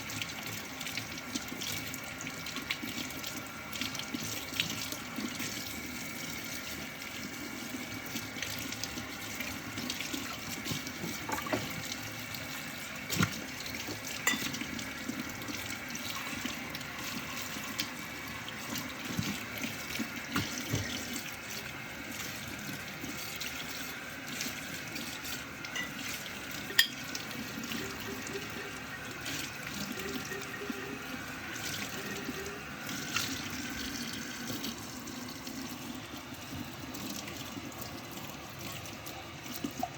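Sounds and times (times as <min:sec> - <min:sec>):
tap water running into sink: 0:00.0 - 0:39.9
dishes clinking and knocking: 0:11.1 - 0:11.8, 0:14.2 - 0:14.6, 0:25.7 - 0:26.0, 0:26.7 - 0:27.0.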